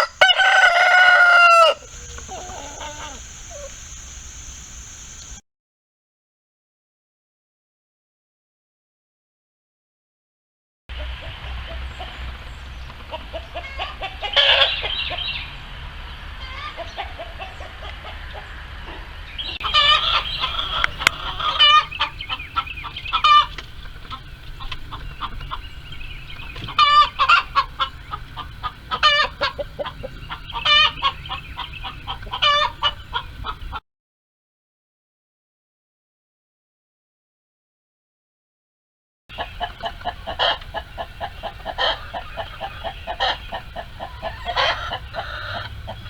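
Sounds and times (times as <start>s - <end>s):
hens clucking: 0.0s - 5.4s, 19.6s - 33.8s, 39.3s - 46.0s
hens squawking: 0.0s - 5.4s, 19.6s - 33.8s, 39.3s - 46.0s.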